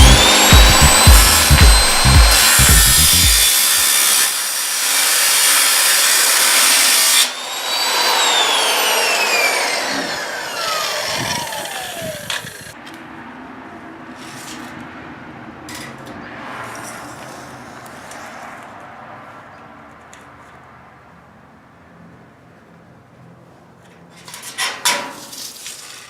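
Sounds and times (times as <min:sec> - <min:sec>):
power saw grinding steel: 0:00.0 - 0:12.8.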